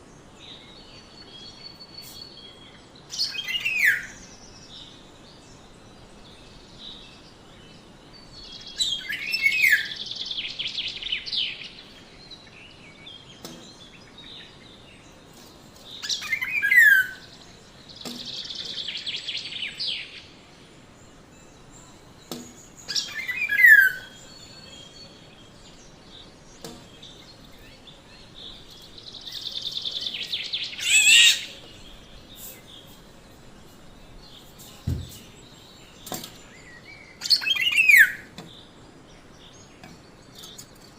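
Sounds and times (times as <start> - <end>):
bird calling with harsh rasps: 15.9 - 17.3, 22.5 - 25.2, 28.5 - 33.0, 36.2 - 38.8.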